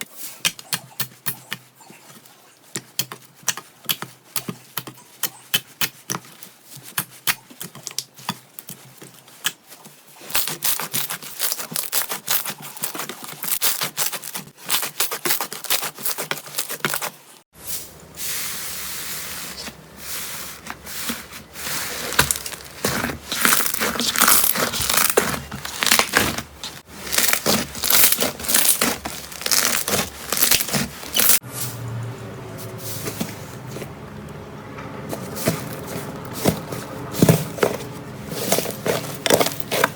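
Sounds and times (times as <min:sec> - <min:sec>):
sticky tearing sounds: 0:10.2 - 0:17.1, 0:21.9 - 0:31.4
slime crackling and popping: 0:22.1 - 0:31.4.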